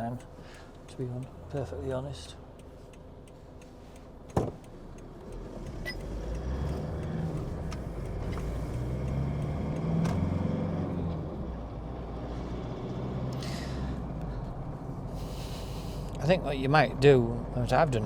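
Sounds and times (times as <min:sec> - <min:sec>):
diesel engine pulling away: 0:05.1 - 0:18.0.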